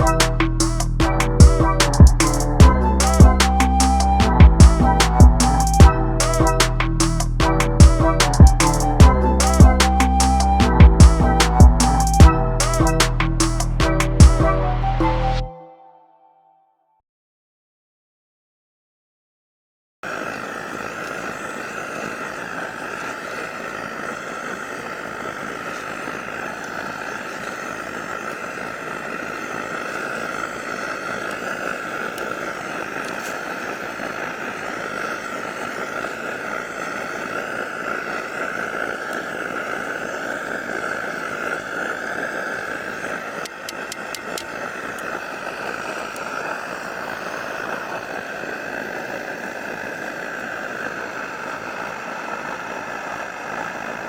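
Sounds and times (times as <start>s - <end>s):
camping stove hissing roar: 20.0s - 54.0s.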